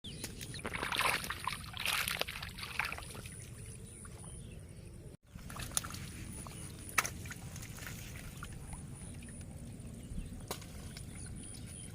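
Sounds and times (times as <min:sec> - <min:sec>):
shallow water splashing: 0:00.4 - 0:04.1.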